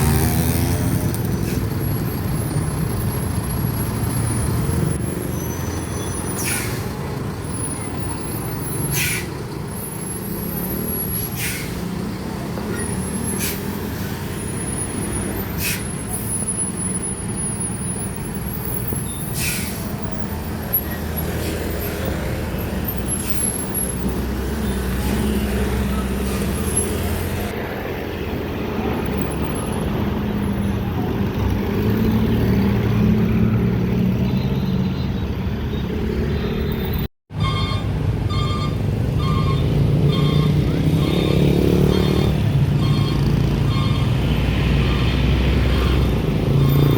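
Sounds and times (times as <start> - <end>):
diesel truck engines droning: 0.0 - 46.9
air-brake hisses: 6.2 - 6.9, 8.9 - 9.4, 11.2 - 11.9, 15.5 - 16.4, 19.2 - 20.0.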